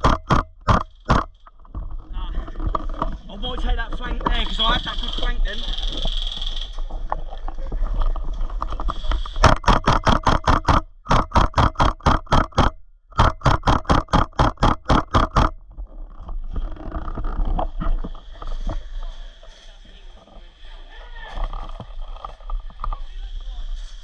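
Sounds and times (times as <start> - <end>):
airsoft gun firing bursts: 9.4 - 15.5.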